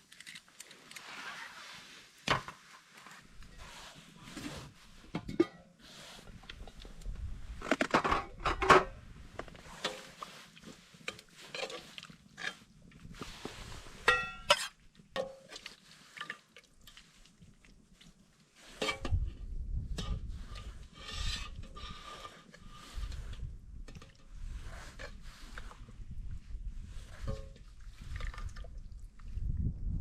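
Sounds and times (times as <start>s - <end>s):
metal cookware clinking and scraping: 14.0s - 15.5s.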